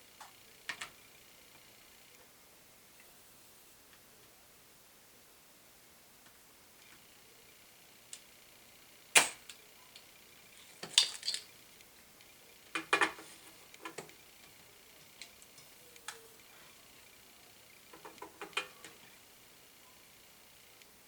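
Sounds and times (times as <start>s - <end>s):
hand tools clicking and clinking: 10.7s - 11.5s.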